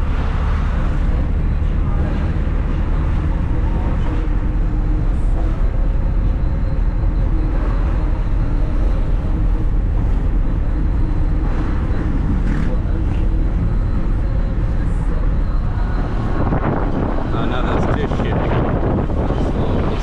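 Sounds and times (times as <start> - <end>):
road vehicles rumbling: 0.0 - 20.0.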